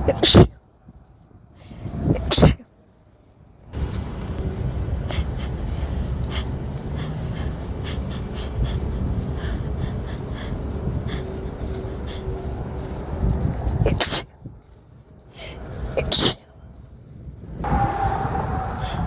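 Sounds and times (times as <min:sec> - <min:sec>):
person sniffing: 0:00.0 - 0:00.5, 0:01.7 - 0:02.6, 0:13.8 - 0:14.3, 0:15.4 - 0:16.4
person breathing heavily: 0:00.0 - 0:02.6, 0:04.7 - 0:16.4.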